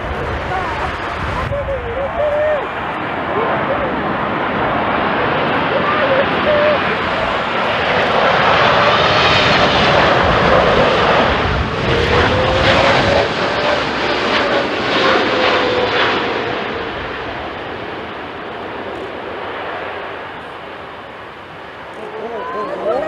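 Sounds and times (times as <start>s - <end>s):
jet airliner flying past: 0.0s - 23.0s.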